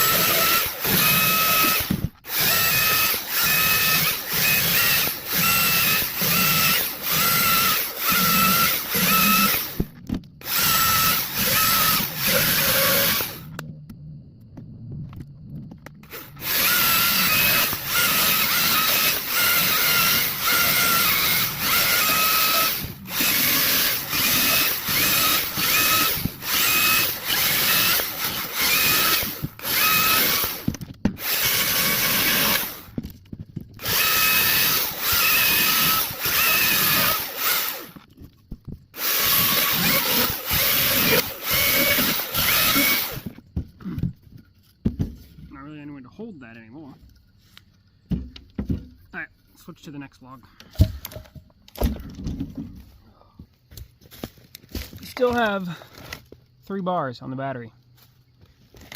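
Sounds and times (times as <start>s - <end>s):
electric chainsaw cutting log: 0.0s - 13.6s, 16.0s - 33.0s, 33.8s - 38.1s, 39.0s - 43.4s.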